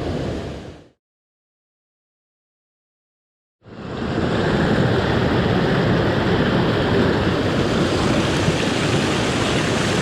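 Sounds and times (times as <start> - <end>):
creek water rushing over rocks: 7.6 - 10.0.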